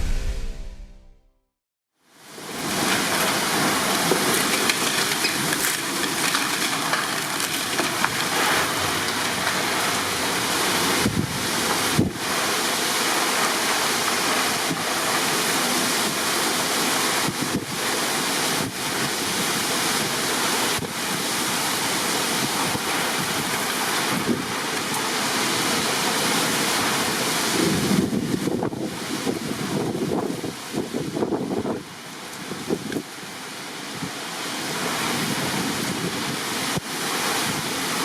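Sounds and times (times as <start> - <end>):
heavy rain pouring: 2.1 - 38.0
wind buffeting microphone: 27.5 - 31.9.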